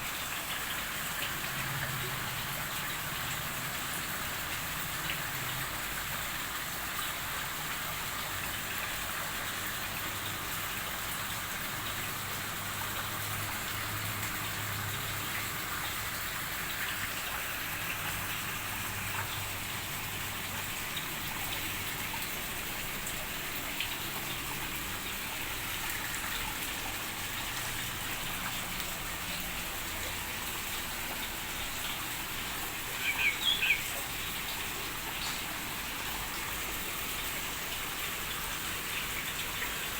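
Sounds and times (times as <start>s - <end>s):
water hissing: 15.0s - 39.9s
high bird chirps: 33.0s - 33.9s.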